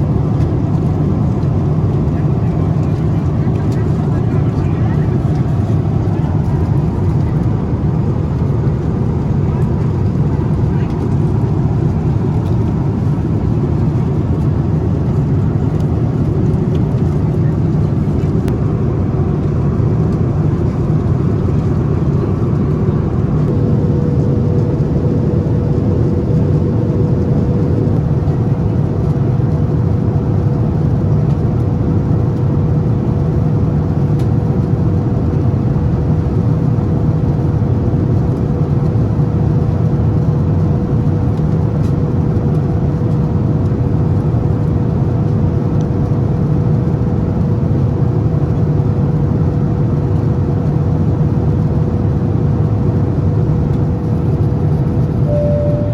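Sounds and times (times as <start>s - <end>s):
engines and airflow rushing: 0.0s - 55.9s
steady hum: 55.2s - 55.9s.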